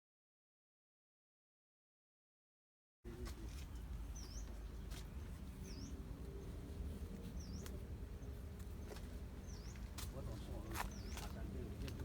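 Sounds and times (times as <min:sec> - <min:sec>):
small bird chirping: 0:03.6 - 0:06.6, 0:07.2 - 0:09.9, 0:10.7 - 0:11.4.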